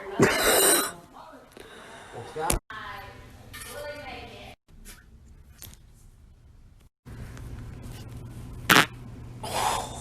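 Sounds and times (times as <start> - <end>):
steady low hum: 6.2 - 10.0.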